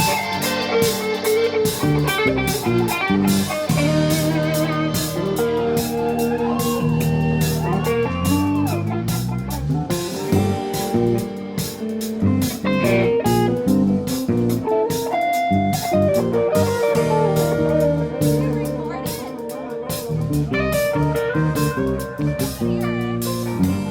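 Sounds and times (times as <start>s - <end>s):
bass guitar: 0.0s - 23.9s
drum-kit beat: 0.0s - 23.9s
electric guitar lead: 0.0s - 23.9s.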